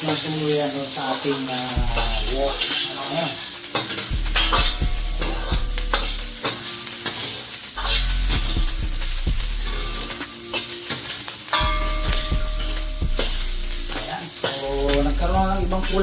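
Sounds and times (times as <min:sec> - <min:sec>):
aromatics sizzling in oil: 0:00.0 - 0:16.0
scraping and knocking on wok: 0:01.8 - 0:15.1.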